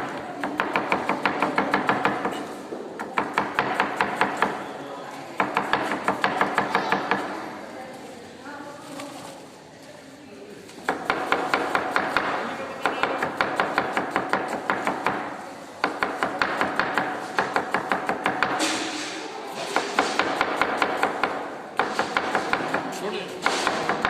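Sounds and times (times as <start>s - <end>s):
knife chopping vegetables on board: 0.0s - 4.6s, 5.4s - 7.3s, 10.8s - 18.7s, 19.6s - 24.0s.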